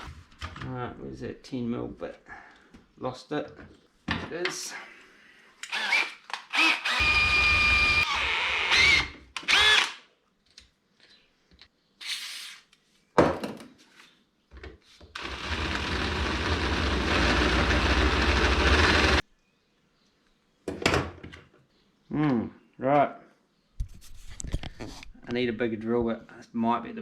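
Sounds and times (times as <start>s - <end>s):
electric drill whirring: 5.6s - 10.0s, 15.2s - 19.2s.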